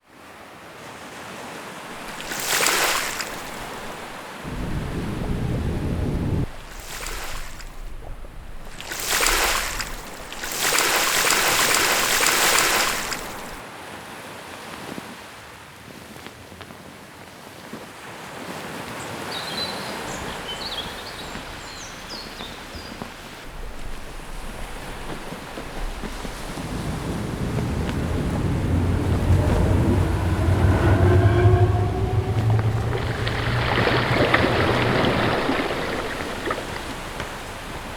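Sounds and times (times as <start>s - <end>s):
ocean waves crashing: 1.9s - 13.6s, 20.2s - 37.9s.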